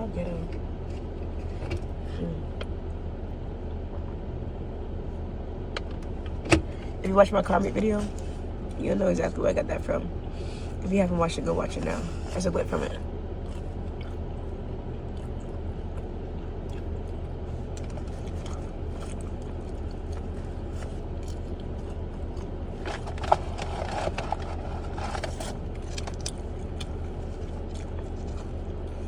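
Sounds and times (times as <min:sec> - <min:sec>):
car engine idling: 0:00.0 - 0:29.0
clicks and scrapes of eating: 0:13.4 - 0:29.0.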